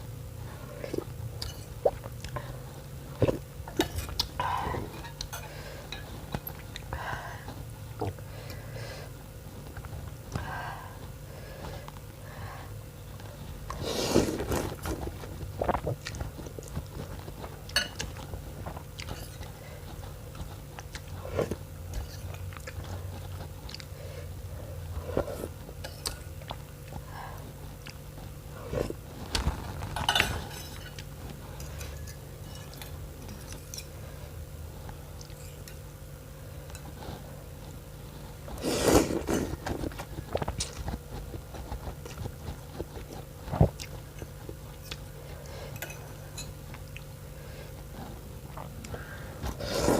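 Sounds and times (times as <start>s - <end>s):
steady low hum: 0.0s - 49.9s
person chewing and biting: 13.7s - 24.0s, 38.5s - 45.1s.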